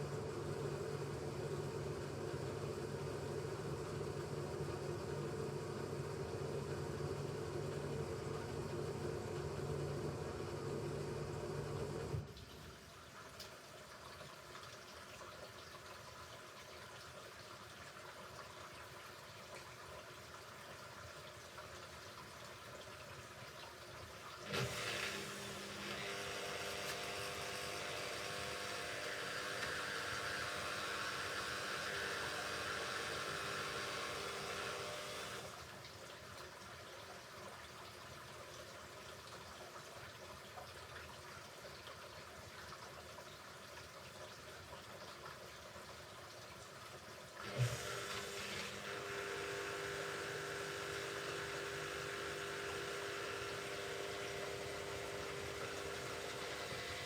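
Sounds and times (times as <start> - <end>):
washing machine motor hum: 0.0 - 12.4, 24.4 - 35.8, 47.4 - 57.0
water rushing into machine: 21.7 - 36.7, 46.3 - 57.0.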